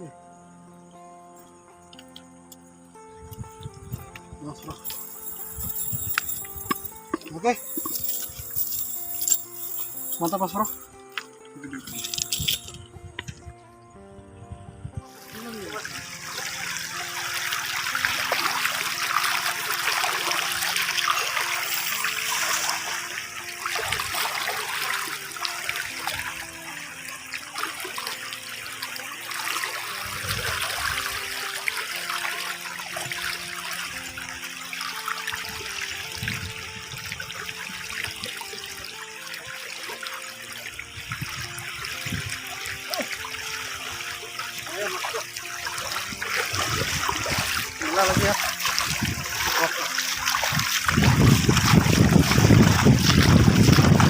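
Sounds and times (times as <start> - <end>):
faint background music: 0.0 - 54.0
river water rushing: 15.2 - 36.2.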